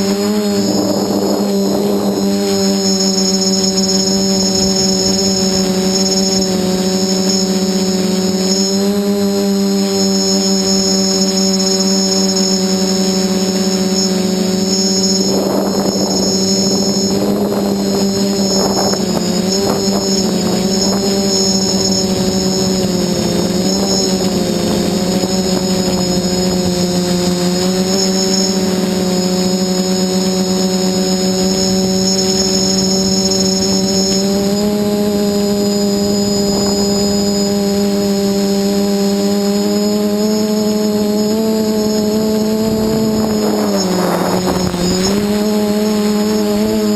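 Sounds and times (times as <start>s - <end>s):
drone motors buzzing with high whine: 0.0s - 46.9s
rush of air noise: 12.6s - 27.7s, 41.6s - 45.9s.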